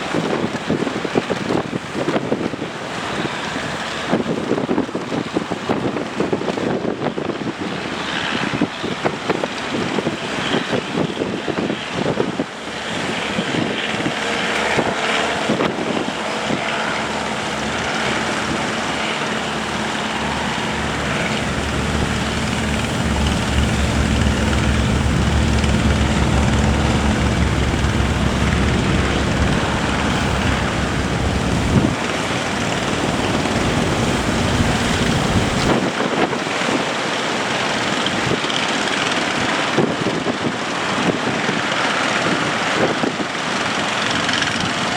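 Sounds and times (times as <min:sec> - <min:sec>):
wind noise on microphone: 0:00.0 - 0:44.9
boat engine droning: 0:12.6 - 0:36.4.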